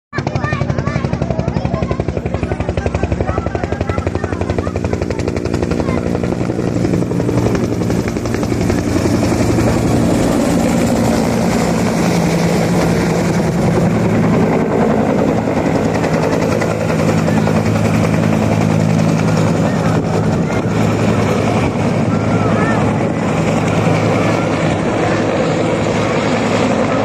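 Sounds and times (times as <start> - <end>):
helicopter engine and turbine: 0.1 - 27.0
helicopter rotor chop: 0.1 - 27.0.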